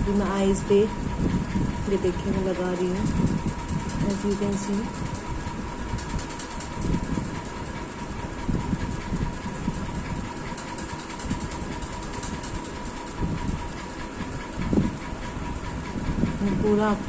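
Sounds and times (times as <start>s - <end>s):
electric fan running: 0.0s - 17.0s.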